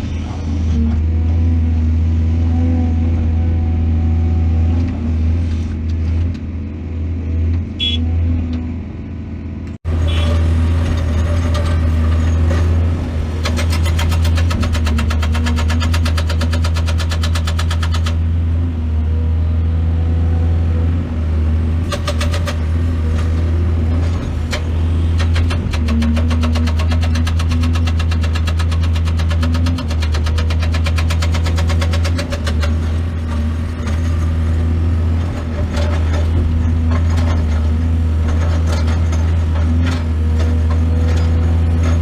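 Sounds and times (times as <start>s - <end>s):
excavator diesel engine running: 0.0s - 42.0s
rapid even clicking or rattling: 13.4s - 18.2s, 21.9s - 22.7s, 24.5s - 32.9s.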